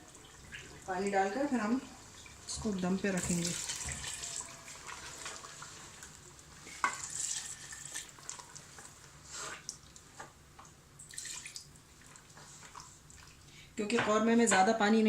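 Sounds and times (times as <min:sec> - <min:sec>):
light sizzle: 0:00.0 - 0:13.7.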